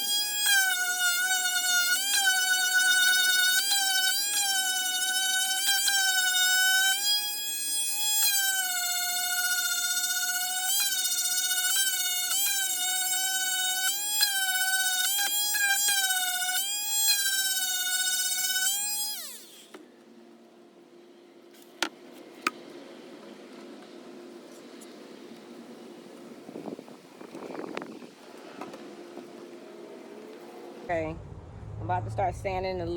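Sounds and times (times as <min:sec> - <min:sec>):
power tool whining: 0:00.0 - 0:19.9.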